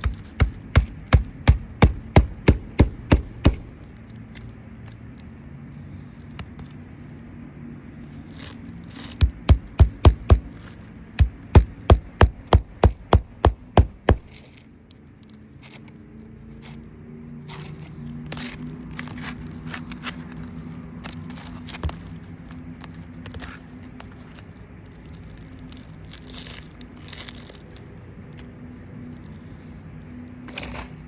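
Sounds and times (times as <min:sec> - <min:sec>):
hammer driving nails: 0:00.0 - 0:03.8, 0:09.2 - 0:10.5, 0:11.2 - 0:14.3.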